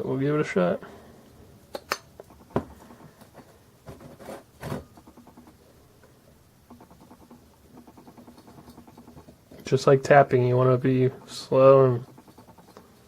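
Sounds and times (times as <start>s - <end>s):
fast faint ticking: 2.2s - 3.4s, 4.9s - 5.6s, 6.6s - 13.0s.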